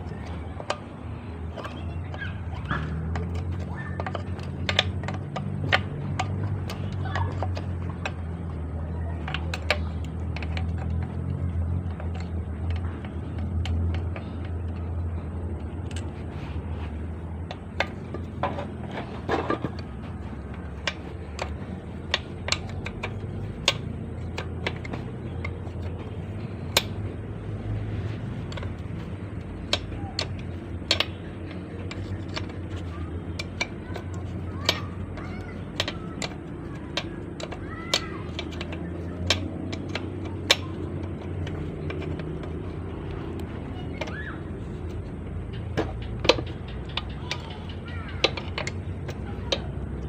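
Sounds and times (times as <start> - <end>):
metallic clicks of hand tools: 0.0 - 16.2, 17.0 - 50.0
steady low hum: 0.0 - 50.0.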